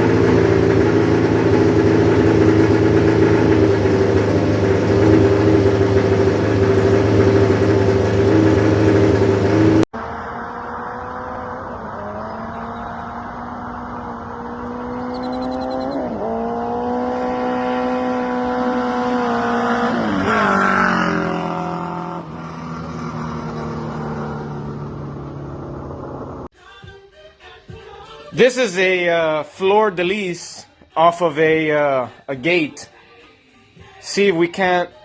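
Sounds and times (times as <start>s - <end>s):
motorcycle engine running: 0.0s - 9.9s, 12.6s - 26.5s.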